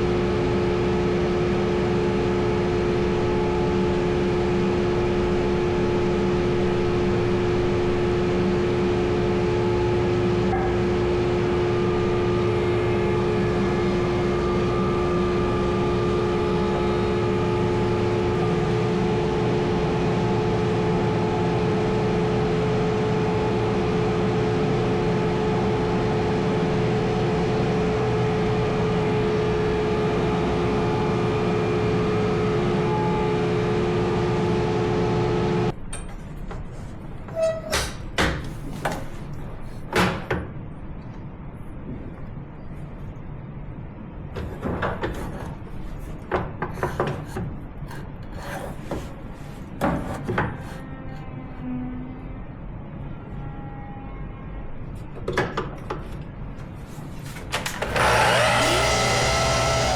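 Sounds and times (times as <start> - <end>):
wood lathe motor hum: 0.0 - 18.5, 57.5 - 59.9.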